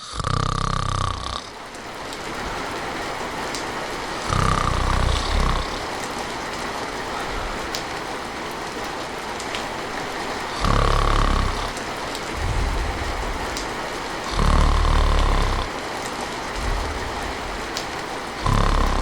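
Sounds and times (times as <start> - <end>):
person snoring: 0.0 - 1.6, 4.2 - 6.0, 10.5 - 15.8, 16.5 - 17.7, 18.4 - 19.0
raindrops dripping: 0.0 - 19.0
steady rain: 0.0 - 19.0.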